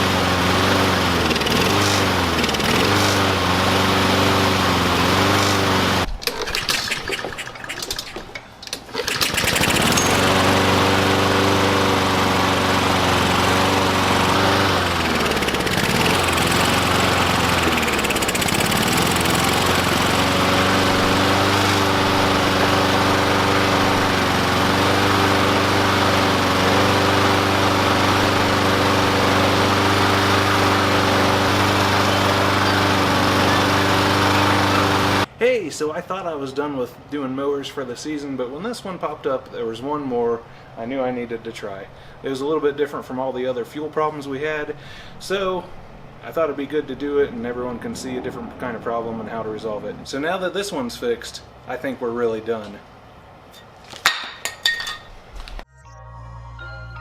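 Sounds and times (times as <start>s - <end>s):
lawn mower engine running: 0.0s - 35.4s.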